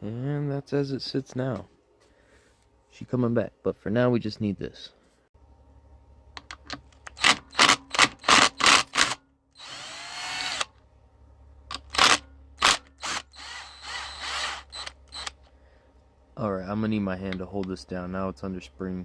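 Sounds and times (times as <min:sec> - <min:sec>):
low steady hum: 0:00.0 - 0:19.0
power drill bursts: 0:07.2 - 0:10.7, 0:11.9 - 0:15.4.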